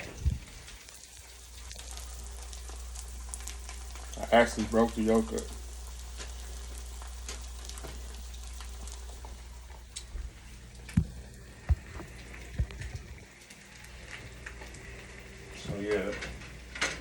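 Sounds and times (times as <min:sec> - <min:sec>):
eggs sizzling in a skillet: 0:00.0 - 0:16.7.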